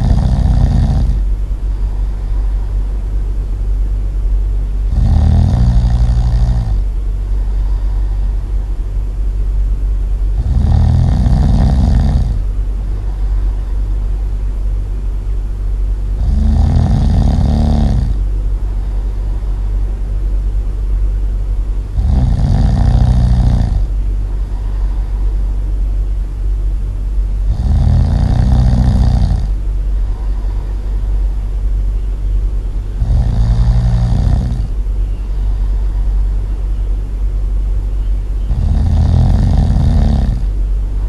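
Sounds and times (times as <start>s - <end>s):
loud rattling snoring: 0.0s - 2.8s, 4.8s - 8.7s, 10.3s - 14.1s, 16.1s - 19.9s, 21.9s - 25.7s, 27.4s - 31.6s, 32.8s - 36.5s, 38.5s - 41.0s
steady low hum: 0.0s - 41.0s.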